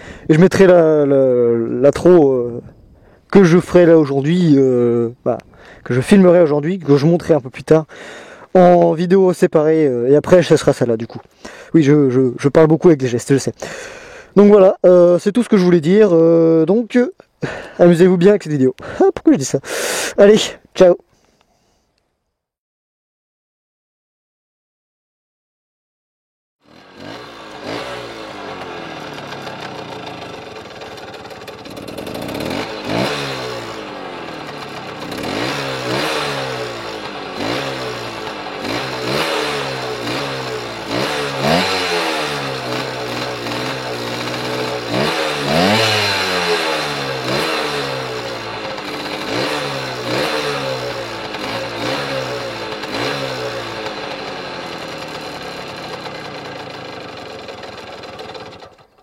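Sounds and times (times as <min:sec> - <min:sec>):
moped engine revving: 0:26.6 - 0:59.0.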